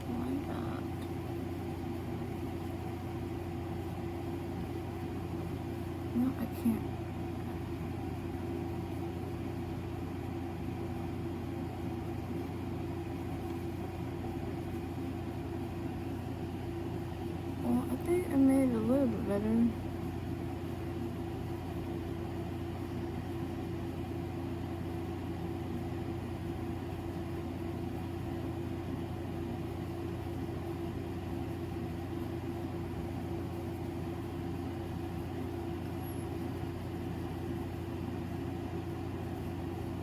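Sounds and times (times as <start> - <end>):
electric fan humming: 0.0 - 40.0.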